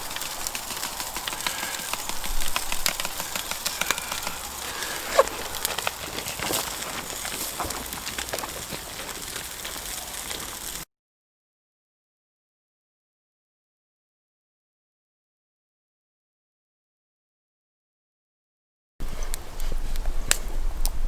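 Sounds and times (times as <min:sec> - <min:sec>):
campfire crackling: 0:00.0 - 0:10.9, 0:19.0 - 0:21.0.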